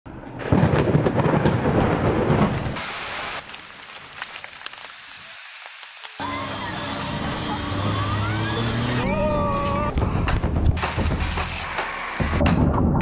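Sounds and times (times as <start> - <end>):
loud thunder rumble: 0.4 - 2.8
rain falling: 0.4 - 9.0.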